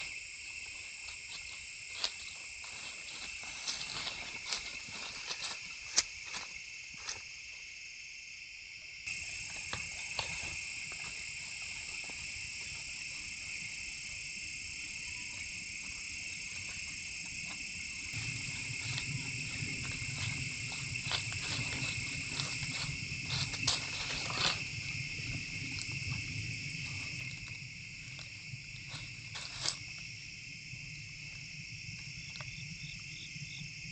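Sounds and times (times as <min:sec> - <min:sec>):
insect chorus: 0:00.0 - 0:33.9
low hum: 0:09.2 - 0:29.3.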